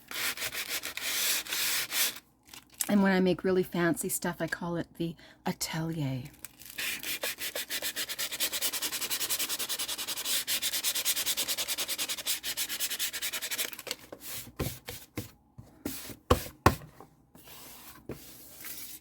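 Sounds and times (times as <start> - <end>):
sandpaper rubbing on book cover: 0.1 - 2.2, 6.8 - 14.7.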